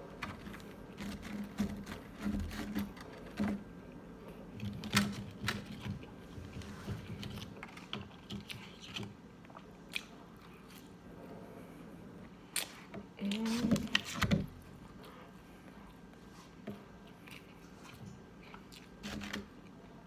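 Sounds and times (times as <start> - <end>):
chewing crunchy food: 7.1 - 11.0, 16.8 - 19.9.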